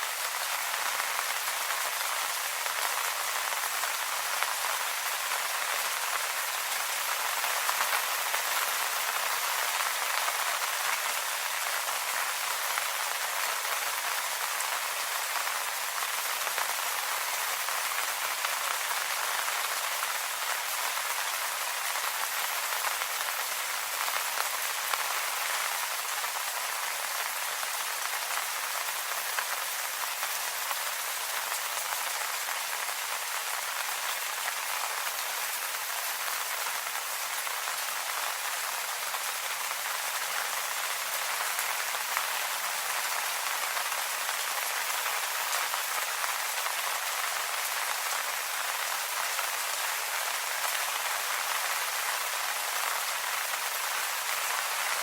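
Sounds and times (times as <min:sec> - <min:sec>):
rain falling on leaves: 0:00.0 - 0:55.0.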